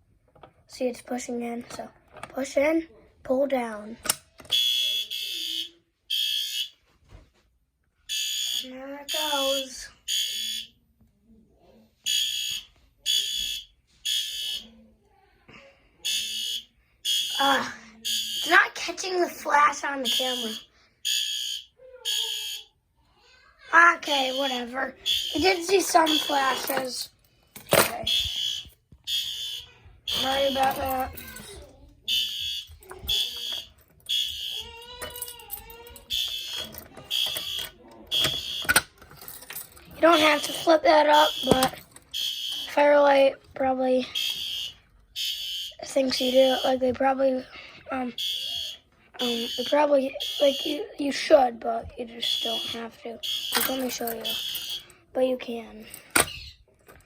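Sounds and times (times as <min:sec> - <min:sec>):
fire alarm horn blasts: 0:04.5 - 0:06.7, 0:08.1 - 0:09.4, 0:10.1 - 0:10.7, 0:12.1 - 0:14.6, 0:16.1 - 0:17.4, 0:18.0 - 0:18.6, 0:20.0 - 0:22.6, 0:24.0 - 0:26.8, 0:28.0 - 0:31.1, 0:32.1 - 0:35.3, 0:36.1 - 0:38.9, 0:40.1 - 0:42.8, 0:44.2 - 0:45.9, 0:48.2 - 0:50.9, 0:52.2 - 0:54.9.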